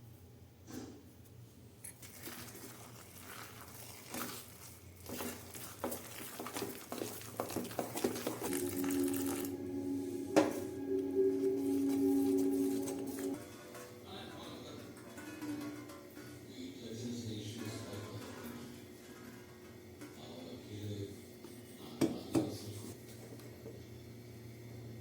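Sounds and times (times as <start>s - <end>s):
low humming tone: 8.5s - 14.0s.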